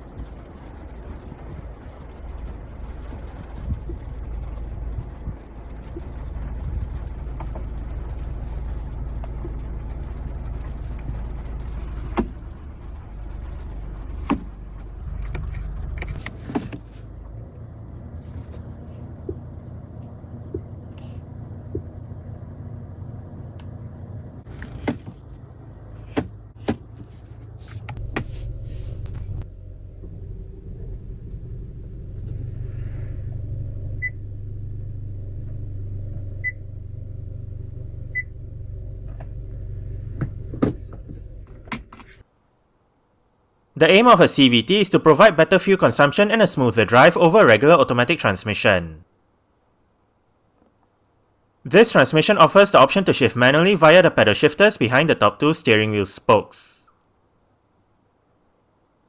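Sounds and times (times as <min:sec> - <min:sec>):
car engine running: 0:00.0 - 0:42.2.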